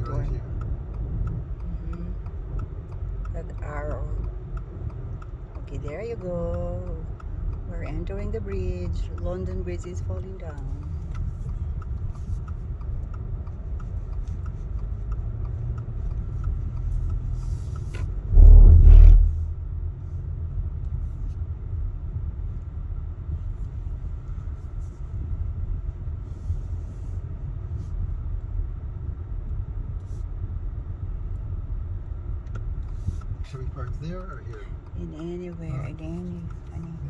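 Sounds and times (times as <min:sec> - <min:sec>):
road and engine noise in car: 0:00.0 - 0:37.0
deep rumbling blast: 0:18.2 - 0:19.6.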